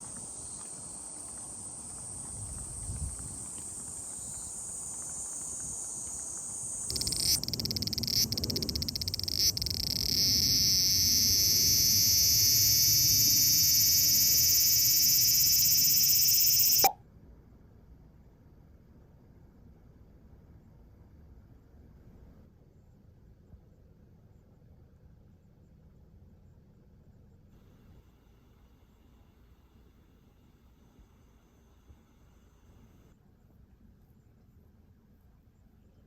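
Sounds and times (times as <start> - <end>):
cicada buzzing: 0.0 - 17.0.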